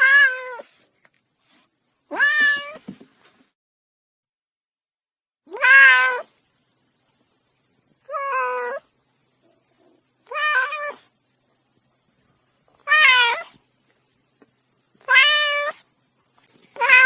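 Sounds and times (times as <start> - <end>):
kitten meowing: 5.5 - 6.3, 10.3 - 11.0, 12.8 - 13.5, 16.8 - 17.0.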